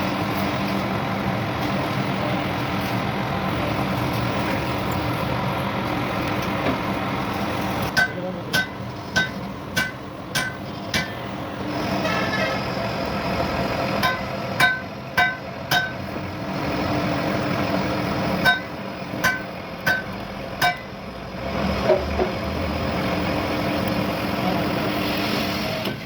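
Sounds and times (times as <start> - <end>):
hammer ringing on steel: 7.9 - 11.2, 14.0 - 16.0, 18.4 - 20.9.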